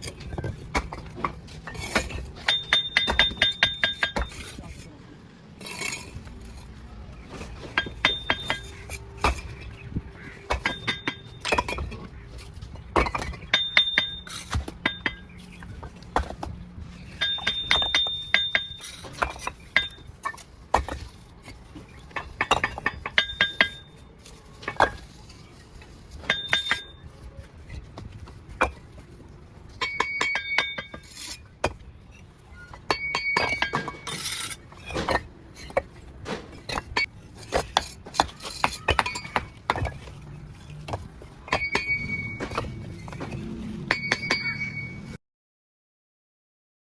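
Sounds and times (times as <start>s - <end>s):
trowel clinking on bricks: 0.0s - 4.9s, 5.6s - 6.8s, 7.4s - 44.8s.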